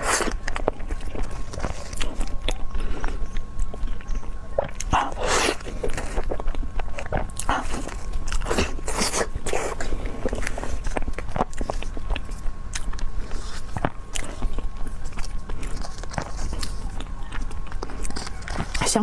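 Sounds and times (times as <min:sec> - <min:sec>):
chewing soft sticky dessert: 0:00.0 - 0:19.0.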